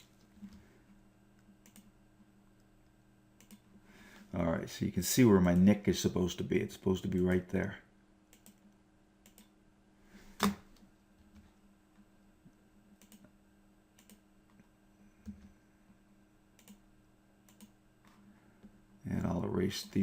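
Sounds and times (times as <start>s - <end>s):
faint steady hum: 0.0s - 20.0s
computer mouse and keyboard clicks: 1.6s - 1.9s, 3.4s - 3.6s, 13.0s - 13.3s, 14.0s - 14.2s, 16.6s - 16.8s, 17.5s - 17.7s.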